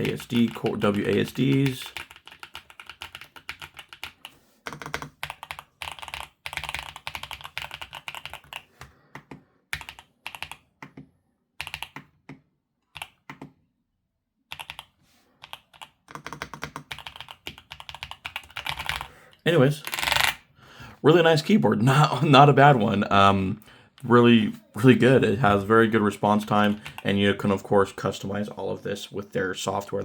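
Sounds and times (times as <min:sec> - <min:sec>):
mechanical keyboard typing: 0:00.0 - 0:11.0, 0:11.6 - 0:13.5, 0:14.5 - 0:20.4, 0:26.4 - 0:27.2.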